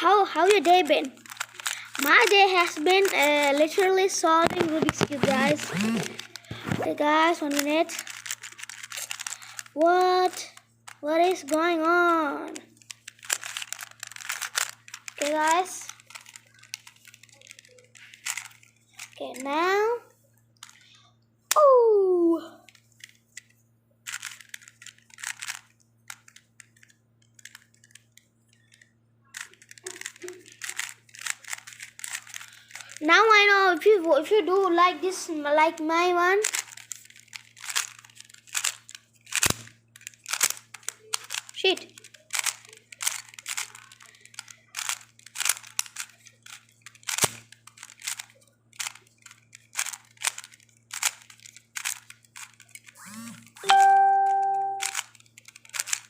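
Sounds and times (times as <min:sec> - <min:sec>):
plastic puzzle cube clacking: 0:00.4 - 0:11.7, 0:12.5 - 0:19.6, 0:22.7 - 0:33.0, 0:36.4 - 0:56.0.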